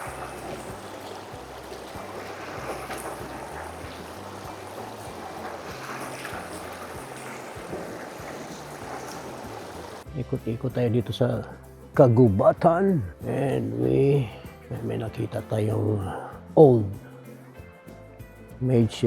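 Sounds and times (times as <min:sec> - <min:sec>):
steady rushing outdoor noise: 0:00.0 - 0:10.1
wind buffeting microphone: 0:00.0 - 0:10.1.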